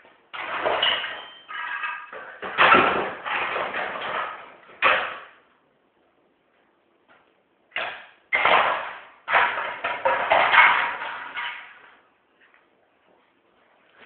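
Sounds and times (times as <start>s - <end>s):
printer being smashed: 0.4s - 5.3s, 7.8s - 11.8s.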